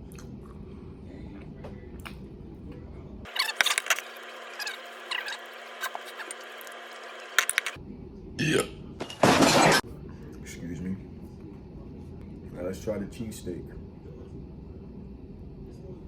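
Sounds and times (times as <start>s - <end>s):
chewing mouth noises: 0.0s - 0.6s
low room hum: 0.0s - 16.0s.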